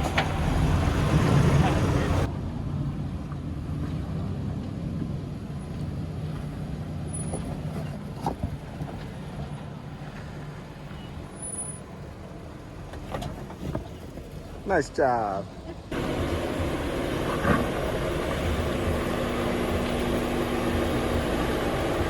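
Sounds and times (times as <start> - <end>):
engine running at low revs: 0.0 - 11.1, 15.7 - 22.0.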